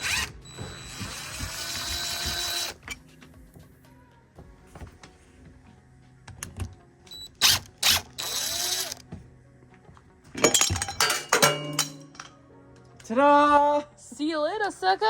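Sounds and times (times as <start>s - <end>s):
loud metal clatter: 10.4s - 12.3s
metal lock clicks and clanks: 10.4s - 12.4s.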